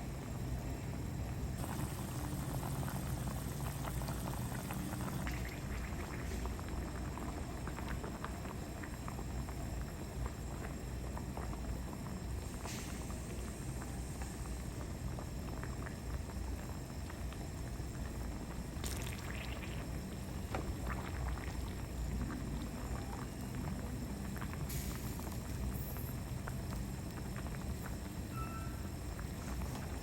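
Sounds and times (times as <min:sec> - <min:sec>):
steady low hum: 0:00.0 - 0:30.0
small crackles and pops: 0:01.2 - 0:30.0
bananas sizzling in oil: 0:01.6 - 0:06.6, 0:24.6 - 0:26.3.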